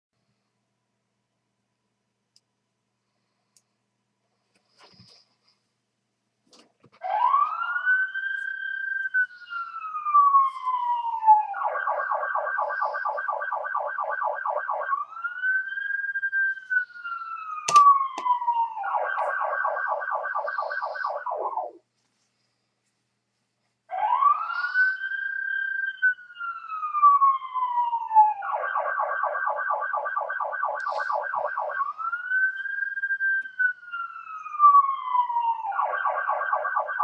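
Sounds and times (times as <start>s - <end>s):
police siren wail and yelp: 7.0s - 21.9s, 23.9s - 37.0s.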